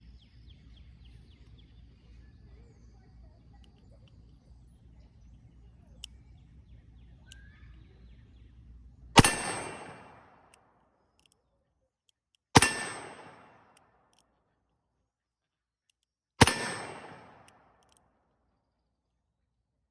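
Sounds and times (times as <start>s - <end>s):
revolver shots echoing: 9.2s - 10.4s, 12.6s - 13.6s, 16.4s - 17.6s.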